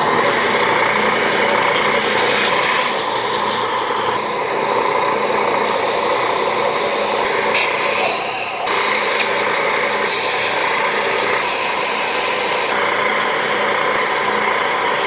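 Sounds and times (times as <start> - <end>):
belt sander motor hum: 0.0 - 15.0
sanding belt hissing on wood: 5.6 - 8.9.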